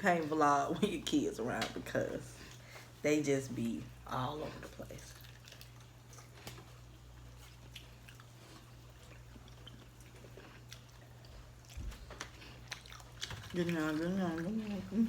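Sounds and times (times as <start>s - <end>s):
low steady hum: 0.0s - 15.0s
faint chewing: 1.6s - 3.0s, 4.4s - 15.0s.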